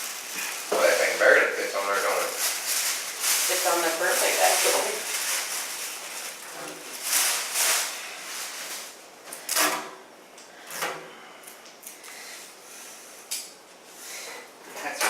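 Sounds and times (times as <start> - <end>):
packaging rustling and scraping: 0.0 - 9.8.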